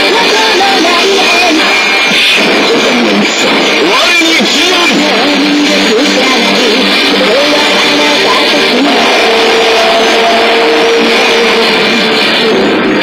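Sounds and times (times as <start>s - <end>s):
loud guitar-driven music: 0.0s - 13.0s
machine sound effects: 7.0s - 13.0s.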